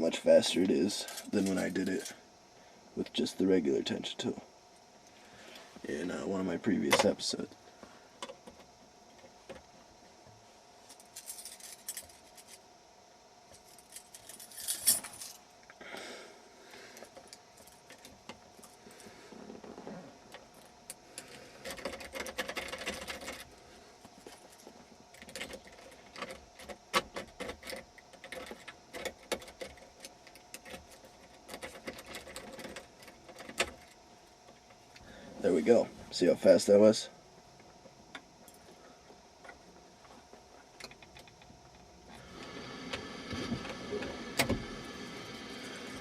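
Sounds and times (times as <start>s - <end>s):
keys rattling in ignition lock: 1.0s - 2.2s, 10.9s - 12.6s, 13.6s - 15.4s, 20.6s - 23.5s, 24.3s - 34.0s.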